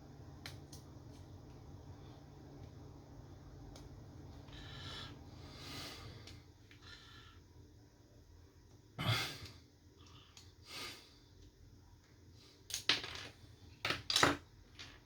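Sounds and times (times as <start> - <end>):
soft breath: 4.4 - 7.5.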